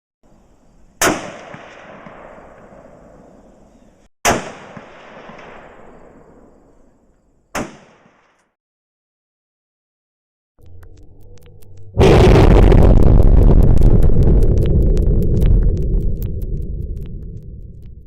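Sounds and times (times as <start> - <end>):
rifle shots with echo: 1.0 - 3.5, 4.3 - 6.5, 7.6 - 8.2.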